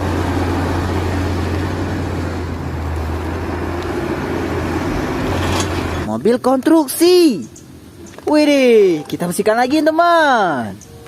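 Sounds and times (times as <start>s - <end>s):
engine running with rushing noise: 0.0s - 6.1s.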